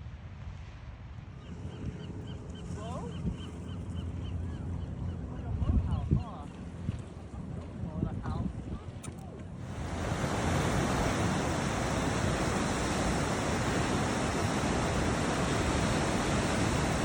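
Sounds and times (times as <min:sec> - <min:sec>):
ocean surf rushing: 0:09.6 - 0:17.0.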